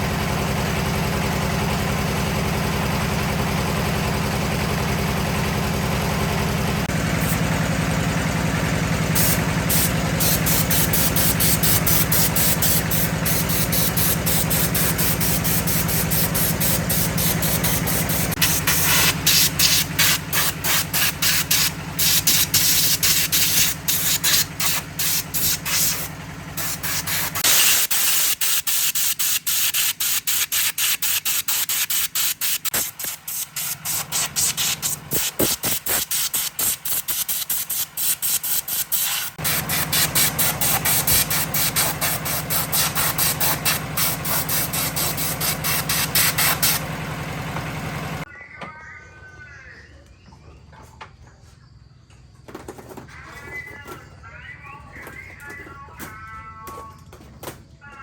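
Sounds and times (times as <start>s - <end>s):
steady machine hum: 0.0s - 28.0s
hissing spray bursts: 9.2s - 46.8s.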